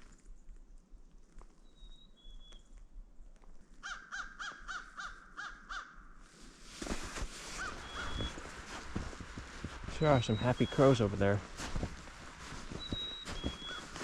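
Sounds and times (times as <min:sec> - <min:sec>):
crows cawing: 0:03.8 - 0:06.1, 0:07.6 - 0:08.3.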